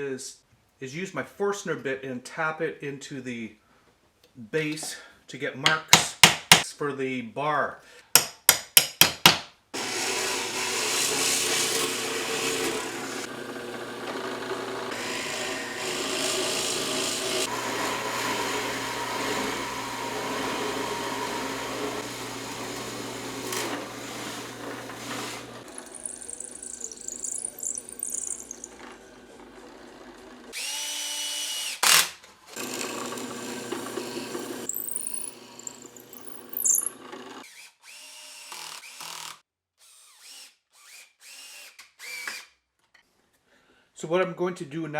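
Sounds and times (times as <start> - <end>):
power drill boring into wood: 9.8 - 42.5.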